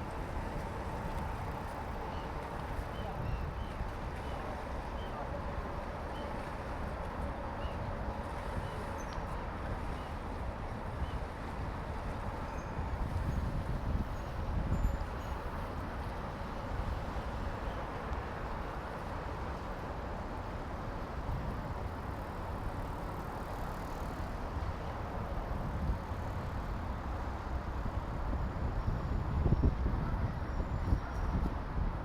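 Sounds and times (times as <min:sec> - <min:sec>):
wind gusting on microphone: 0:11.0 - 0:17.6, 0:25.2 - 0:32.0.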